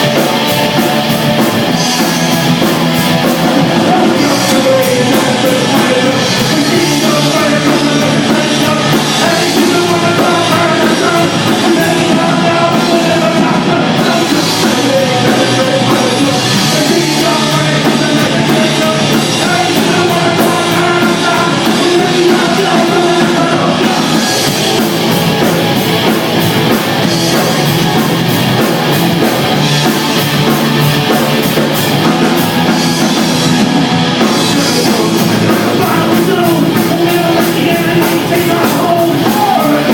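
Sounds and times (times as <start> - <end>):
hard rock band playing: 0.0 - 39.9.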